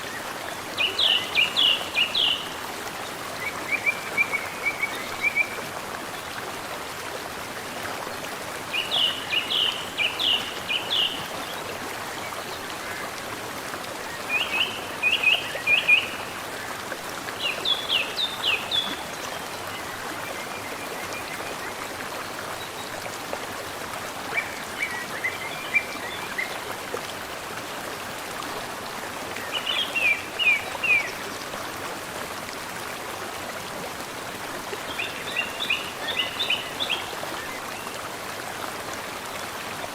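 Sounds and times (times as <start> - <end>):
mountain stream flowing: 0.0 - 39.9
songbird singing: 0.8 - 2.6, 8.7 - 11.3, 34.9 - 37.6.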